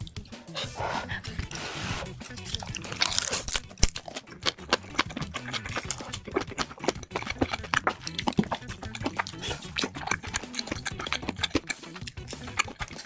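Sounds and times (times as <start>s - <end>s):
chewing and mouth smacks: 2.2s - 13.0s.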